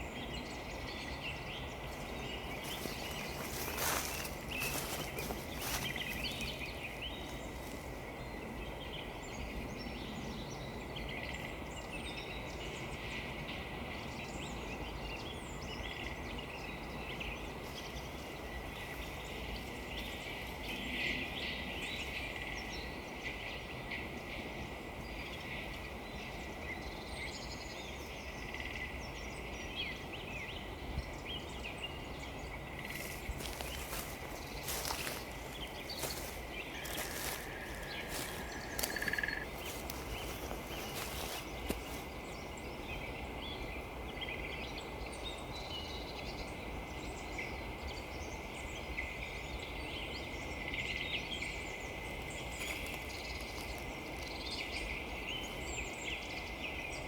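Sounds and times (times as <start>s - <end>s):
small birds chirping: 0.0s - 10.4s, 29.8s - 46.6s, 47.2s - 57.0s
outdoor background hiss: 0.0s - 57.0s
footsteps crunching on frozen ground: 1.9s - 7.8s, 32.8s - 42.2s, 52.1s - 54.3s.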